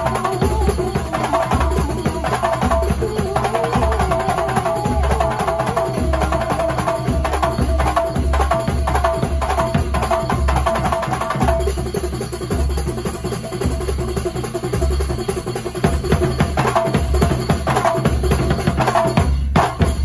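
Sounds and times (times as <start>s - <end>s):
held melody line: 0.0s - 10.0s
drum ensemble playing: 0.0s - 20.0s.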